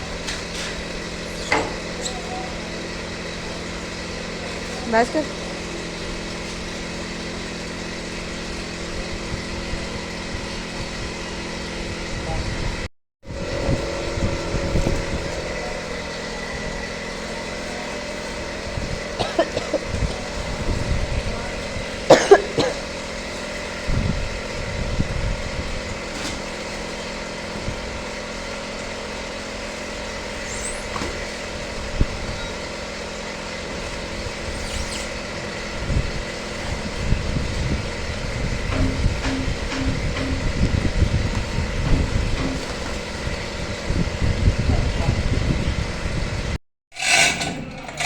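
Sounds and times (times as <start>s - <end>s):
lathe gears humming and whining: 0.0s - 22.2s
loud metallic clatter: 46.9s - 48.0s.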